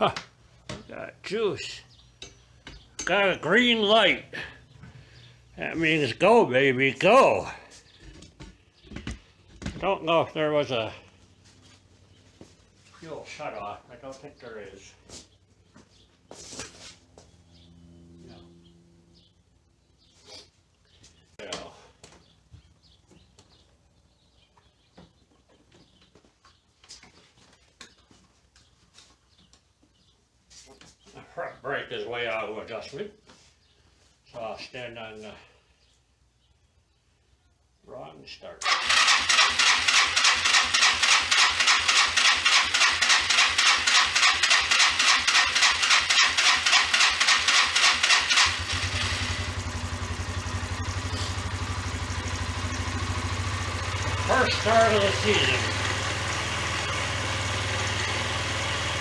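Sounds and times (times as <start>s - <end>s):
scooter starter cranking: 38.6s - 59.0s
scooter engine idling: 38.7s - 59.0s.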